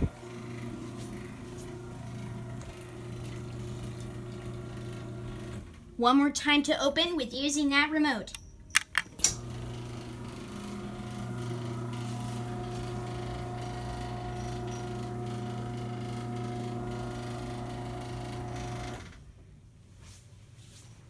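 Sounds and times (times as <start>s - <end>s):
garage door opener motor hum: 0.0s - 6.0s, 9.0s - 19.2s.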